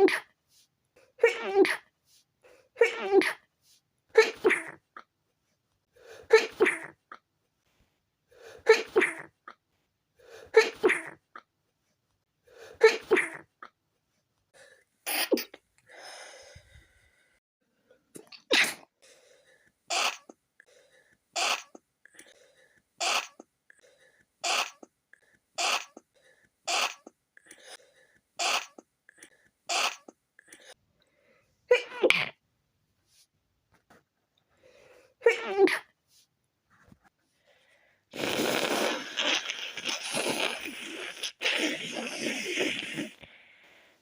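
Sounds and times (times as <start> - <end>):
person stifled sneezes: 0.0 - 0.4, 1.2 - 1.9, 2.8 - 3.5, 4.1 - 5.0, 6.3 - 7.1, 8.6 - 9.6, 10.5 - 11.2, 12.8 - 13.5, 15.1 - 15.6, 18.3 - 18.9, 19.9 - 20.4, 21.4 - 21.8, 23.0 - 23.5, 24.4 - 24.9, 25.6 - 26.1, 26.7 - 27.1, 28.4 - 28.8, 29.7 - 30.2, 31.7 - 32.4, 35.2 - 36.0, 38.2 - 43.2.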